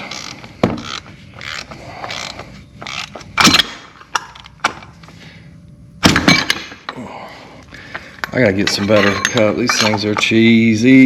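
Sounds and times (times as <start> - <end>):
metal clank: 8.2 - 10.4.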